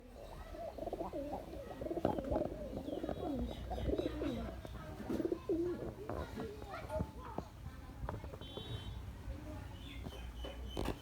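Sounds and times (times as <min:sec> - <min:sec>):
pigeons cooing: 0:00.5 - 0:05.9.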